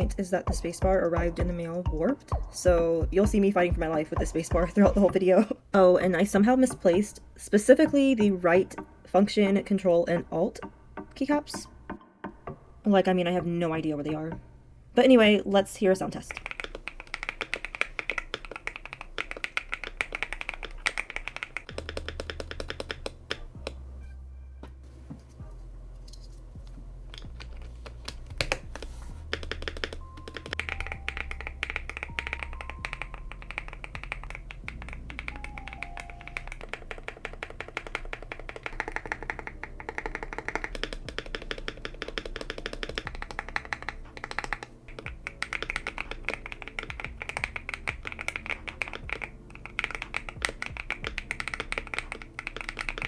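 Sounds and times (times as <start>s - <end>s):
background music: 0.0s - 53.0s
mechanical keyboard typing: 16.2s - 23.8s, 27.1s - 53.0s.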